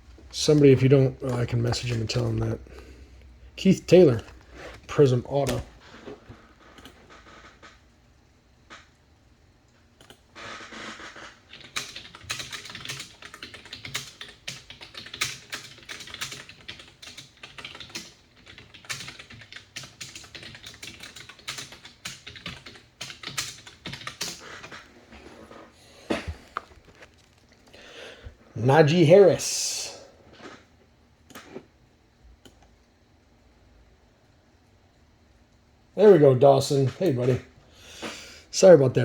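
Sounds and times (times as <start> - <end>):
computer keyboard typing: 0.4 - 2.6, 6.4 - 7.8, 10.0 - 24.9.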